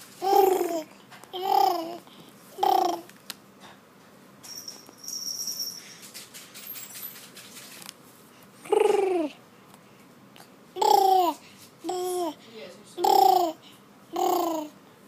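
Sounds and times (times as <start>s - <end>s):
baby vocalizing: 0.2s - 3.1s, 8.6s - 9.4s, 10.8s - 12.4s, 13.0s - 14.8s.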